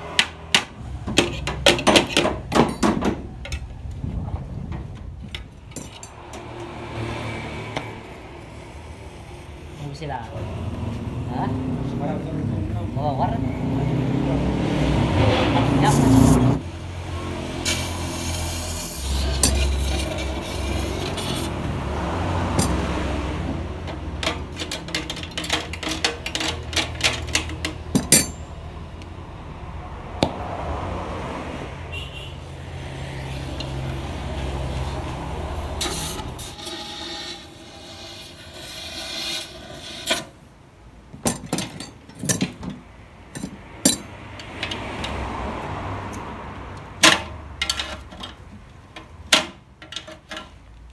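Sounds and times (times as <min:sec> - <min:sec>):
metal clinking and tapping: 0:23.8 - 0:28.5, 0:41.2 - 0:44.8.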